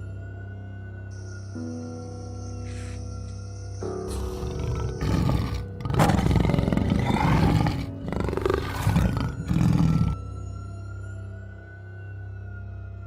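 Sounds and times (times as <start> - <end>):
background music: 0.0 - 13.0
tiger roaring: 4.1 - 10.2.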